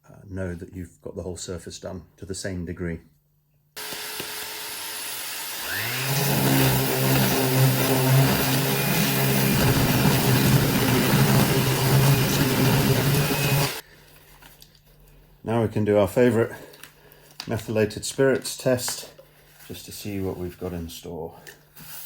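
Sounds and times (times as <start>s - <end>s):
power sander on wood: 3.8s - 13.8s.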